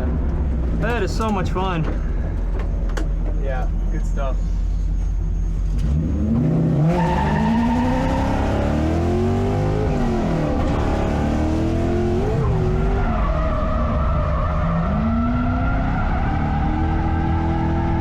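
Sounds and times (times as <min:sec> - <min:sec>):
tyres skidding: 0:00.0 - 0:18.0
car engine revving: 0:04.9 - 0:18.0.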